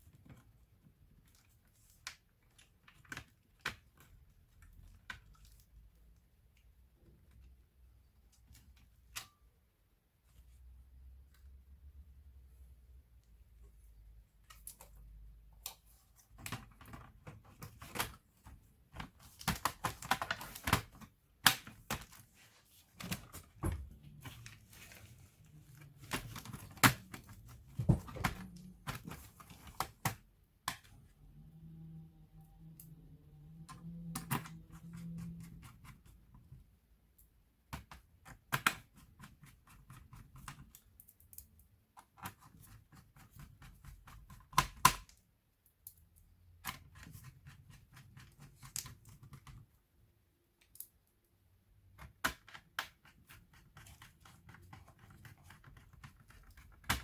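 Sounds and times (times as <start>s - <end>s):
clicks of laptop parts handled: 26.0s - 31.0s, 52.0s - 57.0s.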